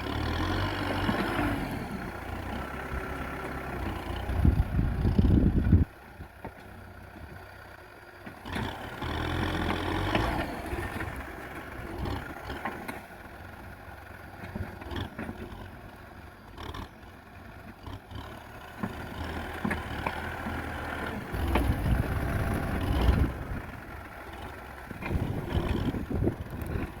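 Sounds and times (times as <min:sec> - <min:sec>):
tractor diesel engine running: 0:00.0 - 0:27.0.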